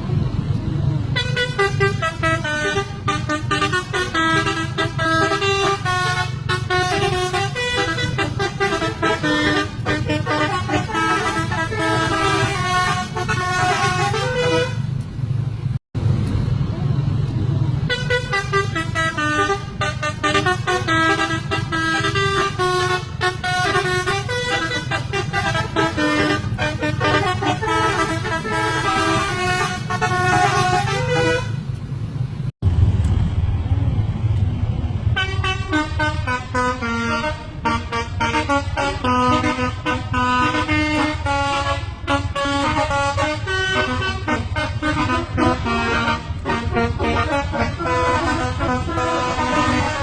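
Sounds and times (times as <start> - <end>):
bus engines rumbling: 0.0 - 50.0
musical bus air horns: 1.1 - 15.0, 17.8 - 31.8, 35.1 - 50.0
low rumble: 31.6 - 36.4.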